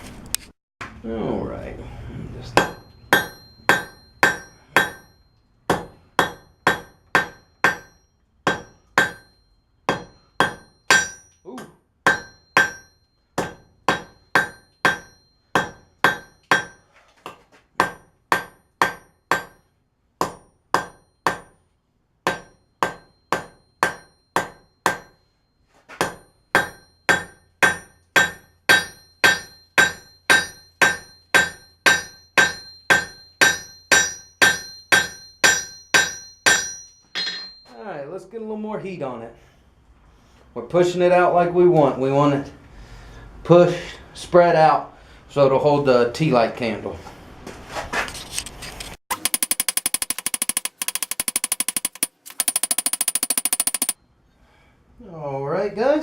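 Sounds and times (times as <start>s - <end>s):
hammer striking steel on anvil: 2.5s - 21.6s, 22.2s - 25.3s, 26.0s - 37.7s, 49.1s - 54.0s.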